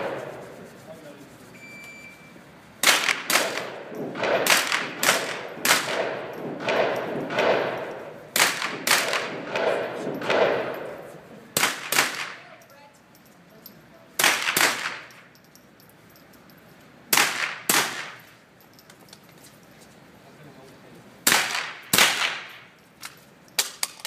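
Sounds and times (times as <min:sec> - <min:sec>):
rifle shots with echo: 0:00.0 - 0:00.4, 0:02.8 - 0:12.4, 0:14.2 - 0:15.1, 0:17.1 - 0:18.2, 0:21.2 - 0:22.7.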